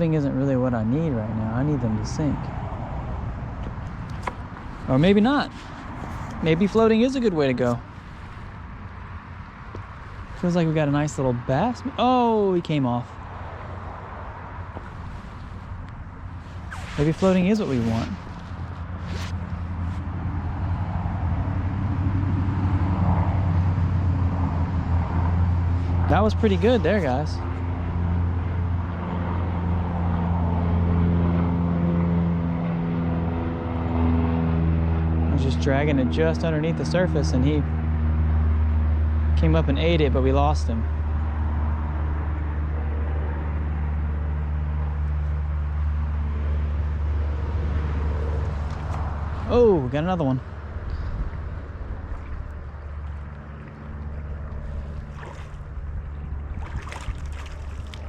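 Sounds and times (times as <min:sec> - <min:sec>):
wind rumbling on microphone: 0:00.0 - 0:33.4, 0:40.9 - 0:58.0
vehicle engine drone: 0:00.0 - 0:58.0
creek water flowing: 0:03.6 - 0:21.6, 0:25.4 - 0:28.0, 0:47.8 - 0:58.0.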